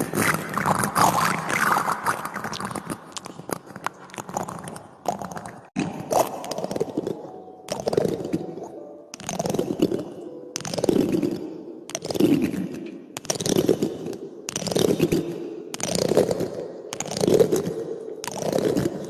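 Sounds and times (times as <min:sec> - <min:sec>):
spoon scraping cactus spines: 0:00.0 - 0:12.6.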